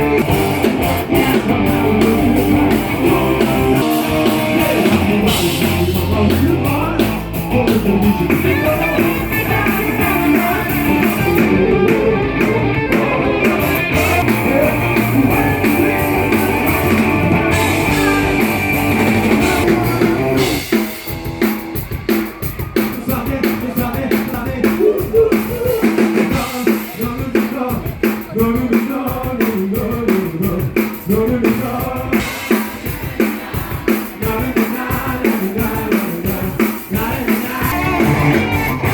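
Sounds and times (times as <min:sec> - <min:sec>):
deep bass: 0:00.0 - 0:21.4, 0:37.6 - 0:38.9
drum kit: 0:00.0 - 0:38.9
guitar: 0:00.0 - 0:38.9.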